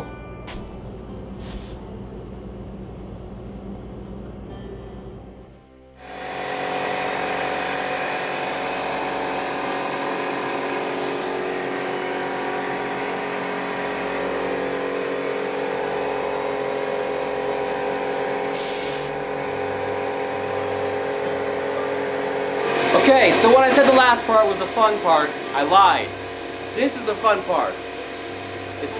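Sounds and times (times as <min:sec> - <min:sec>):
air hissing: 0:00.5 - 0:03.5, 0:18.5 - 0:19.2
electric air pump motor humming: 0:00.5 - 0:03.6, 0:06.0 - 0:28.9.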